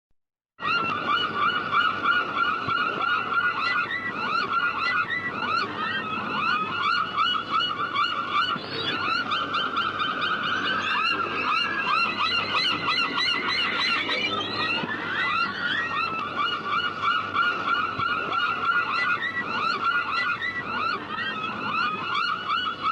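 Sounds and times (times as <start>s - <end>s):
seagulls squawking: 0.6s - 22.9s.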